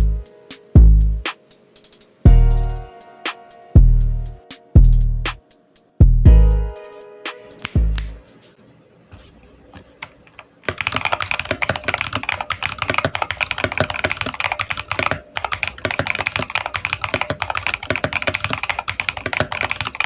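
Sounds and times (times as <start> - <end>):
fast mechanical keyboard typing: 10.6 - 20.0.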